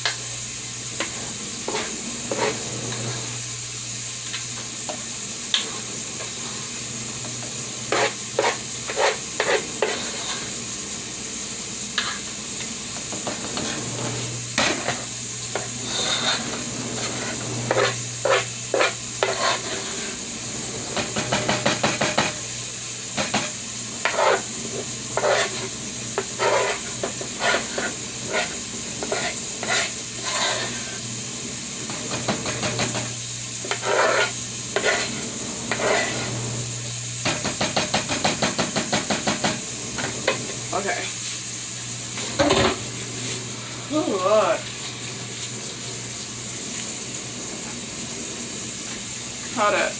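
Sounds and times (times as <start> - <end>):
steady hiss: 0.0 - 49.9
utensil knocking against a bowl: 37.3 - 39.6.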